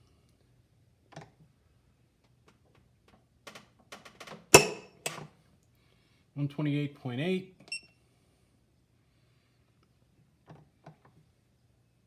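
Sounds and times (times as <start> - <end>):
torque wrench sharp click: 4.6 - 5.2.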